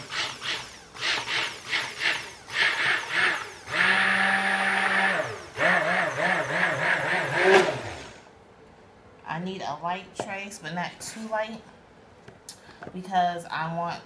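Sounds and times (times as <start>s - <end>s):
stick blender whirring: 0.0s - 8.3s.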